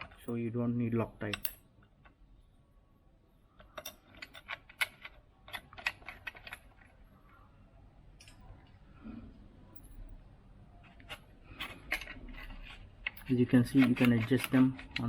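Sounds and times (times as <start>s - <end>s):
metal hardware clinking: 1.2s - 1.7s, 3.6s - 6.9s, 10.9s - 15.0s.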